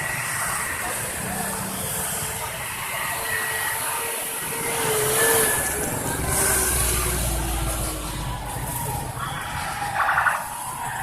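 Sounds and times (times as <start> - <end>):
faint voices: 0.0 - 11.0
road traffic noise: 0.0 - 11.0
vehicle engine rumble: 0.0 - 11.0.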